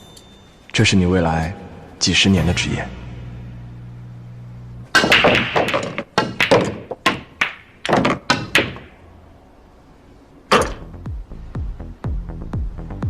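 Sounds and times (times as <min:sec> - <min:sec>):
low hum: 0:00.0 - 0:06.2, 0:08.7 - 0:13.0
billiard balls clacking: 0:04.9 - 0:09.1.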